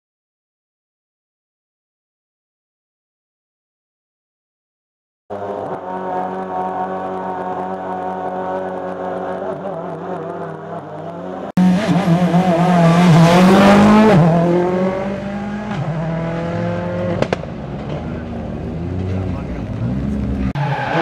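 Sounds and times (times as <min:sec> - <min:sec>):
rally car revving past: 0:05.3 - 0:21.0.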